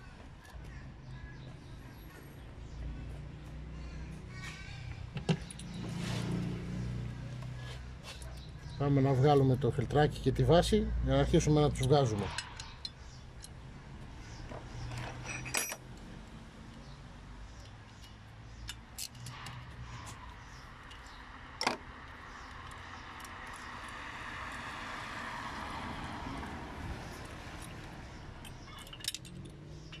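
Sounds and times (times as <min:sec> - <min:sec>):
metal tools clinking: 0:14.8 - 0:15.8, 0:17.6 - 0:21.2, 0:27.2 - 0:30.0.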